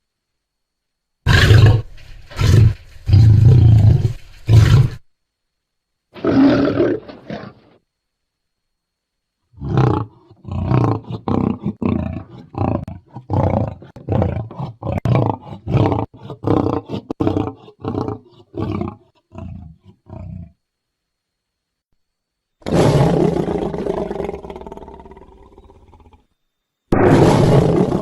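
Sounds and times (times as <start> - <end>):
deep dinosaur roars and growls: 1.3 - 5.0, 9.6 - 20.6, 22.6 - 26.2, 26.9 - 28.0.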